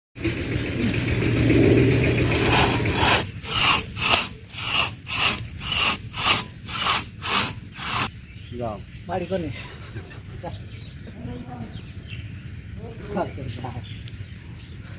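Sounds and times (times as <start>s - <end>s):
saw cutting wood: 2.2s - 8.1s.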